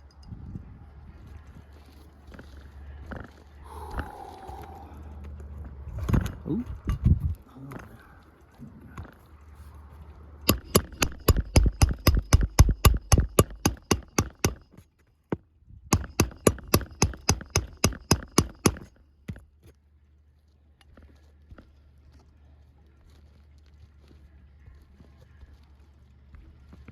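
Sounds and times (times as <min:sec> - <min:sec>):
hammer driving nails into shingles: 0:10.5 - 0:14.8, 0:15.9 - 0:19.4.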